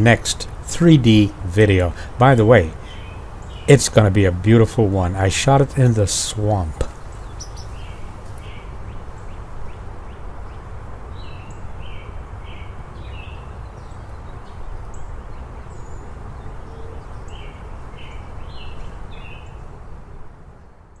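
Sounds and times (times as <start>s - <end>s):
small birds chirping: 0.0s - 9.4s.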